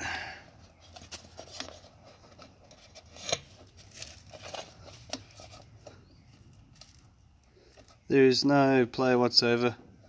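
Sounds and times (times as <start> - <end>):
rustling handling noise: 0.5 - 8.1.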